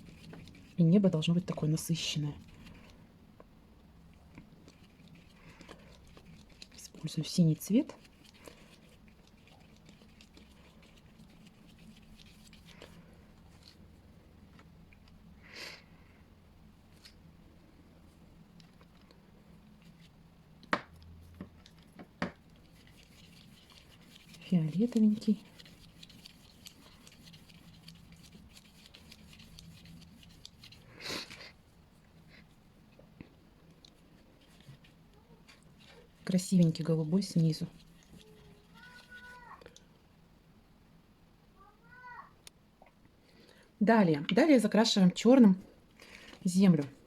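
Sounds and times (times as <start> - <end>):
paintbrush scratching on paper: 0.0 - 3.0, 4.6 - 13.8, 22.5 - 32.6, 34.0 - 39.6
low steady hum: 0.0 - 47.0
paper rustle: 22.6 - 31.5, 37.7 - 39.6.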